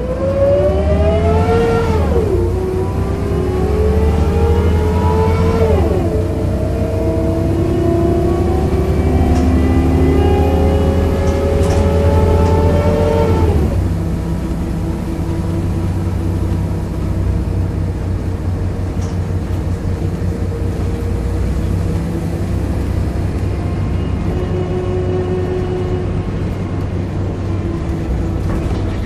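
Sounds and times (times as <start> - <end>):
whining driveline tones: 0.0 - 19.4
bus engine pulling away: 0.0 - 29.0.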